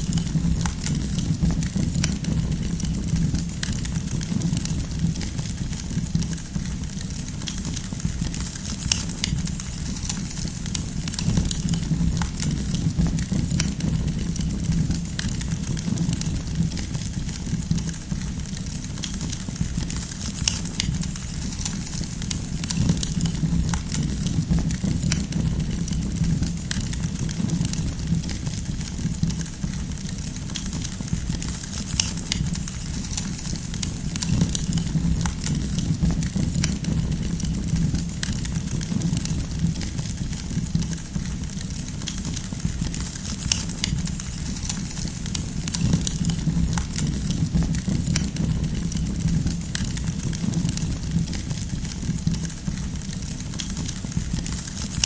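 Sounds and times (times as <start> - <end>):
low rumble: 0.0 - 6.9, 10.6 - 18.6, 22.3 - 30.1, 32.4 - 41.6, 43.9 - 53.1
campfire crackling and popping: 0.0 - 55.0.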